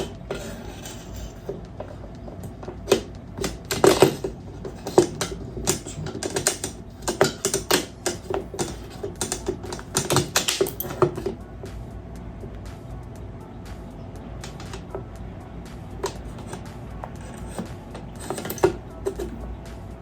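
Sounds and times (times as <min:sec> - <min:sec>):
rifle parts clicking and knocking: 0:00.0 - 0:11.4, 0:14.4 - 0:15.0, 0:16.0 - 0:19.4.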